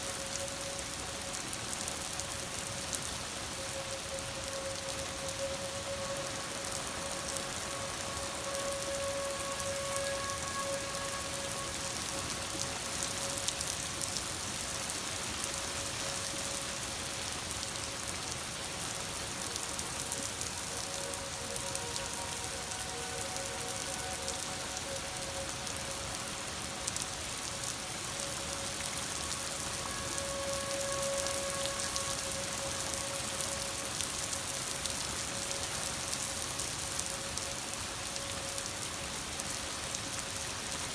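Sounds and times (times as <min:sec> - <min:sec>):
falling rain hiss: 0:00.0 - 0:40.9
tornado siren steady tone: 0:00.0 - 0:40.9.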